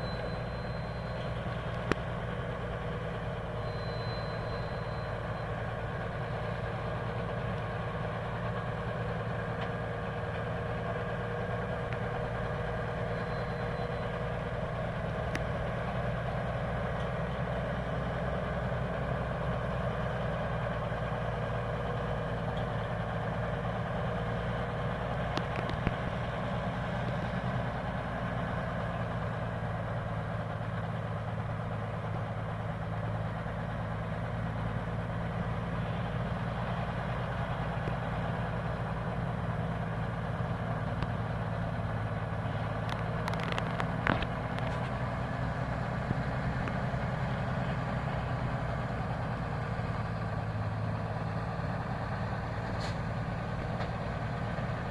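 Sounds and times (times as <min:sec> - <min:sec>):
truck engine running: 0:00.0 - 0:54.9.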